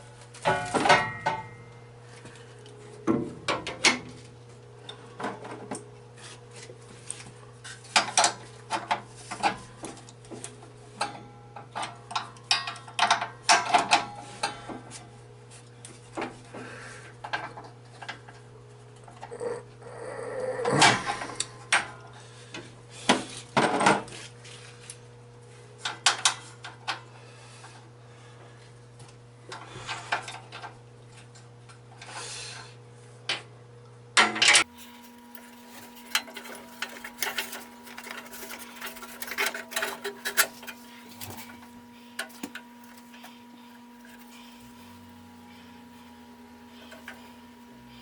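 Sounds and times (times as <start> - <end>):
steady low hum: 34.6 - 48.0
metal tools clinking: 34.7 - 48.0.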